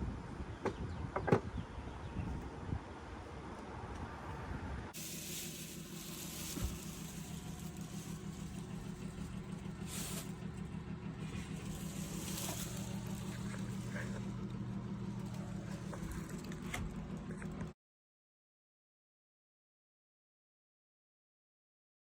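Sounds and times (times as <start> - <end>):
car engine idling: 5.0 - 17.7.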